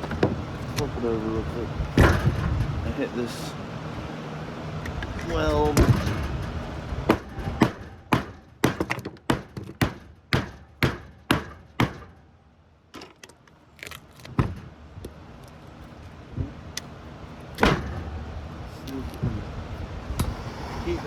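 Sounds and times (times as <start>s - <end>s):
light knocks and clatter: 1.9s - 2.9s, 4.8s - 12.2s
hammer striking metal core: 7.1s - 12.2s.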